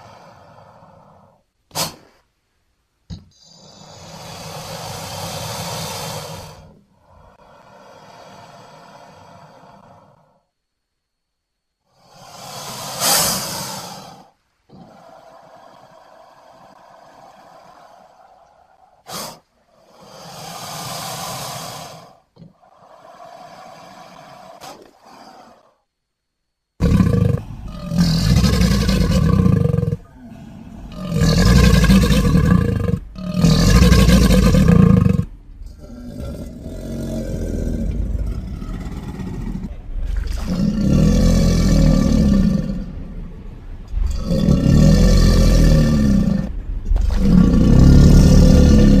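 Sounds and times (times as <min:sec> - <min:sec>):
crocodile growls and roars: 0:26.8 - 0:49.0.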